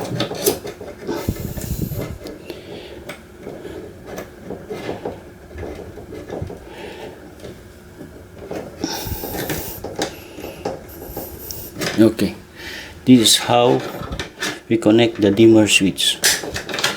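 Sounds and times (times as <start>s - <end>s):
wires being handled: 0.0s - 16.9s
short scraping hiss: 1.1s - 2.3s, 8.8s - 11.9s.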